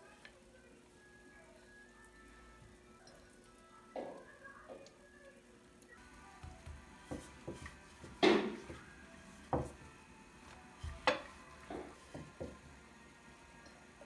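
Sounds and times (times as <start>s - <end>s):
dishes and utensils clinking: 6.0s - 13.8s.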